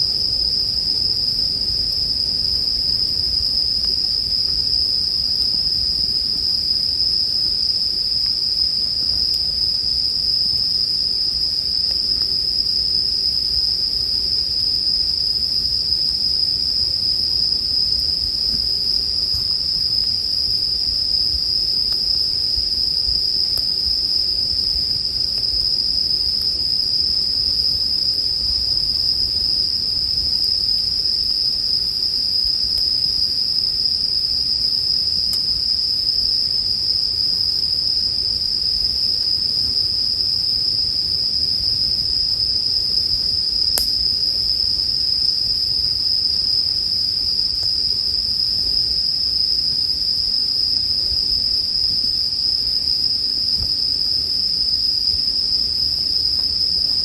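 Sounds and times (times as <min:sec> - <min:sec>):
crickets chorus: 0:00.0 - 0:57.0
campfire crackles: 0:43.8 - 0:44.0.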